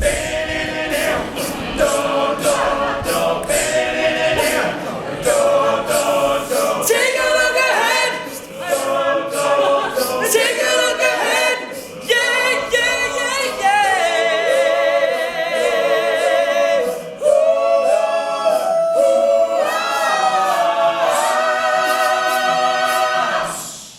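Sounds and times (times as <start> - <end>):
male a cappella group singing: 0.0 - 23.9.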